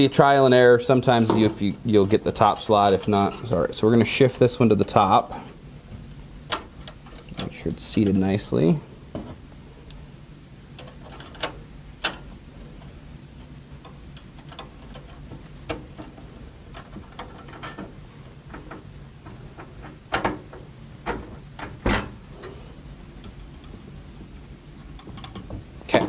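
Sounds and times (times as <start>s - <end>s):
steady low hum: 0.0s - 26.0s
clicks and knocks of computer parts: 13.9s - 22.2s.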